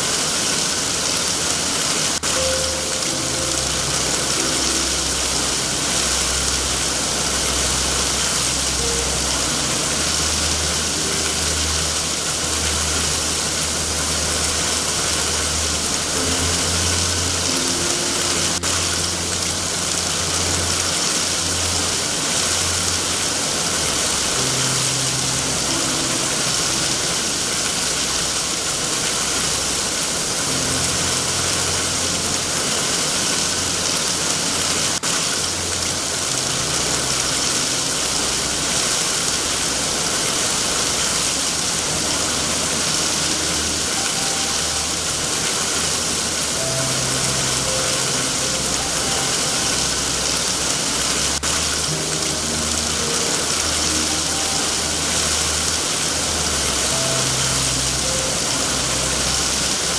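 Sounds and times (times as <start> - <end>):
heavy rain hissing: 0.0 - 59.9.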